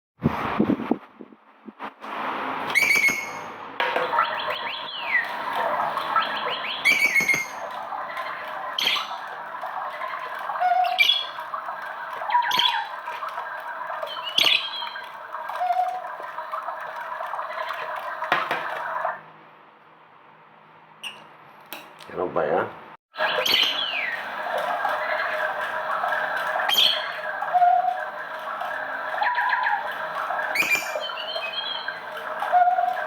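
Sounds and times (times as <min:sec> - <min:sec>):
parrots chattering: 0:02.7 - 0:19.2, 0:23.2 - 0:33.0
parrots squawking: 0:02.7 - 0:19.2, 0:23.2 - 0:33.0.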